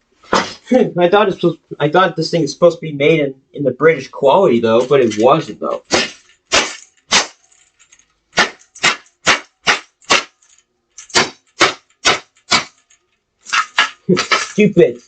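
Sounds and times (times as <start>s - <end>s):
plastic toy smashed with sharp cracks: 5.8s - 7.5s, 8.3s - 14.7s.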